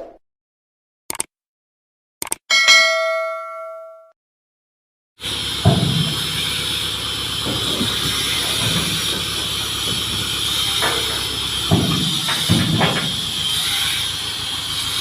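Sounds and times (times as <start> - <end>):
crane engine running: 5.2 - 15.0
knocks: 7.5 - 13.4.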